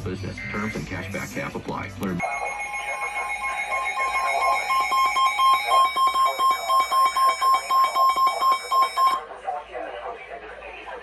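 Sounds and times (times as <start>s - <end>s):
high electronic alert beeping: 2.2s - 9.2s
steady electronic tone: 2.2s - 9.2s.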